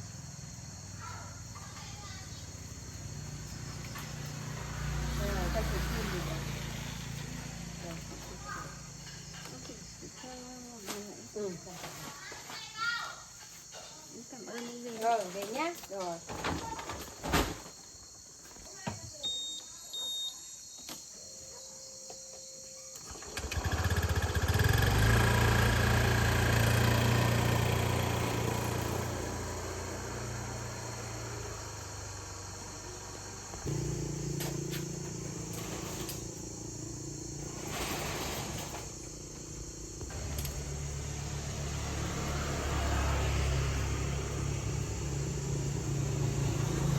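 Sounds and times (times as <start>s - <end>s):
small engine running: 2.3s - 9.6s, 23.1s - 46.9s.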